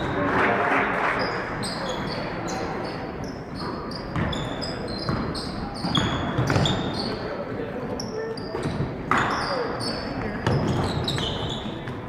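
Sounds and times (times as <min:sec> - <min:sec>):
sneakers squeaking on court: 0:01.2 - 0:07.4, 0:08.0 - 0:12.0
basketball bouncing: 0:04.1 - 0:04.4, 0:05.1 - 0:05.3, 0:05.9 - 0:06.8.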